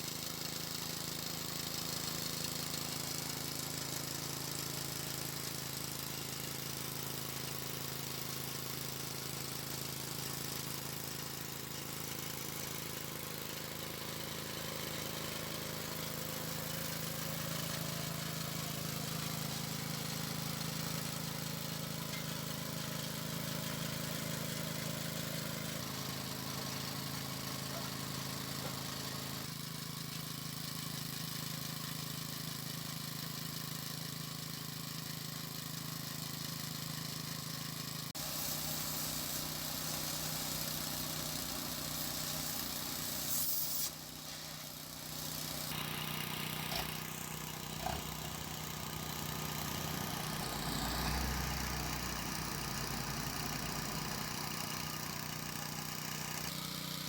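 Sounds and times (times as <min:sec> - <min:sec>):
noisy hissing engine: 0:00.0 - 0:29.9, 0:37.8 - 0:57.0
engine idling: 0:00.0 - 0:57.0.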